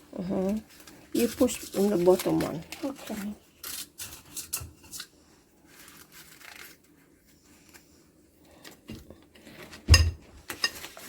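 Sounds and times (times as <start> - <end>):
paper liners rustling: 0.2 - 8.8, 10.4 - 11.0.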